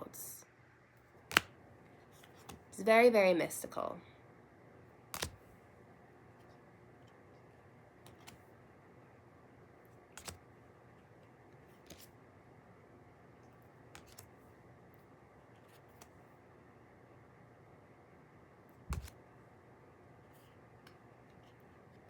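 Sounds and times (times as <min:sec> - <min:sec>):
cards being handled and laid down: 0:01.2 - 0:02.7, 0:05.1 - 0:05.5, 0:08.0 - 0:08.5, 0:10.2 - 0:10.4, 0:11.6 - 0:12.2, 0:13.9 - 0:14.4, 0:15.6 - 0:16.2, 0:18.8 - 0:19.2.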